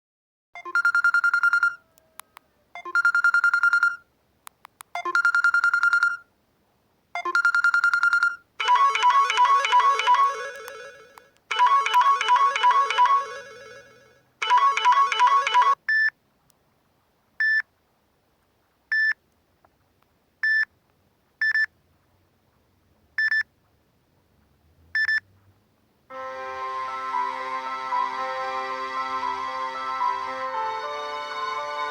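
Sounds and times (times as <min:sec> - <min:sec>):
multi-note chime melody: 0:08.6 - 0:15.8, 0:26.1 - 0:31.9
single-pitched electronic tone: 0:08.6 - 0:15.8.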